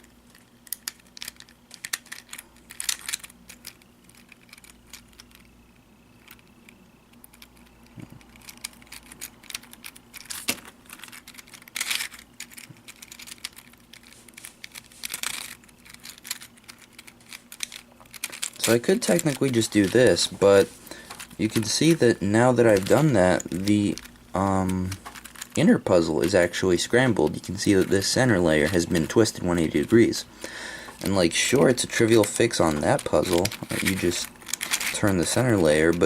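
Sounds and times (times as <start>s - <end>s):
plastic puzzle clicking and scraping: 0.0s - 36.0s.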